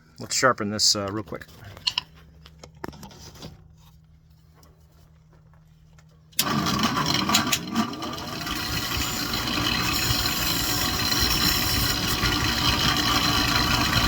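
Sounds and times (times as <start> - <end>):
low steady hum: 0.0 - 14.0
bench grinder whining: 6.4 - 14.0.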